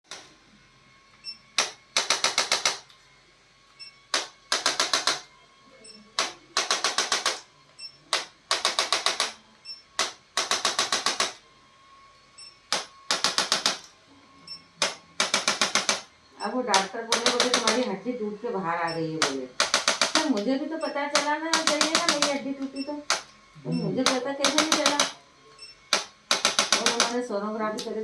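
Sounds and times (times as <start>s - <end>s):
sharp clicking: 16.7s - 17.9s, 19.2s - 20.5s, 21.1s - 23.3s, 24.0s - 25.2s, 25.9s - 27.2s.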